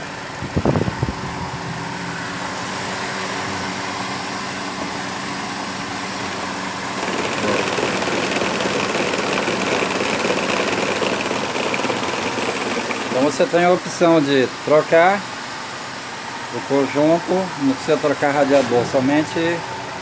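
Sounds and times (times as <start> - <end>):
car engine idling: 0.0 - 15.0
radiator cooling fan whirring: 0.0 - 20.0.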